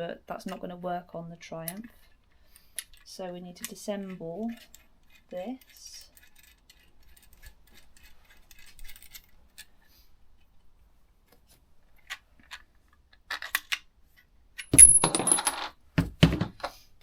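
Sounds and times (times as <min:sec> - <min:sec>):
small metal parts clicking: 0:01.7 - 0:09.7, 0:14.6 - 0:15.6.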